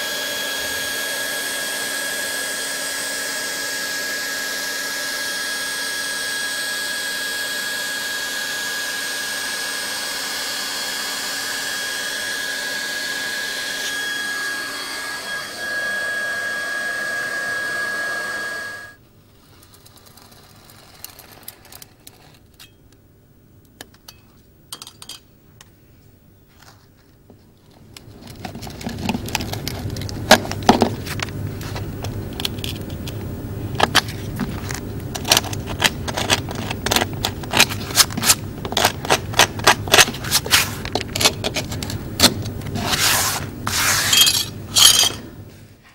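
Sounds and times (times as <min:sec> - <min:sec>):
hot-air welding gun whining: 0:00.0 - 0:19.0
faint clicks and scrapes: 0:19.3 - 0:22.7.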